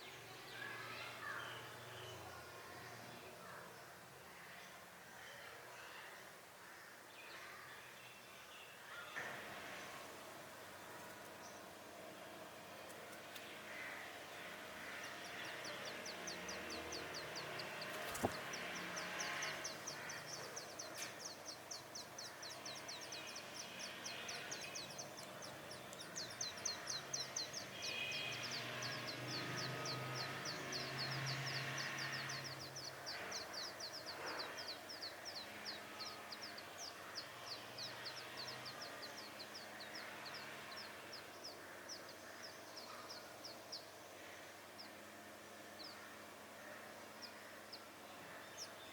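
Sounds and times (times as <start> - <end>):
nestlings begging calls: 13.2 - 48.9.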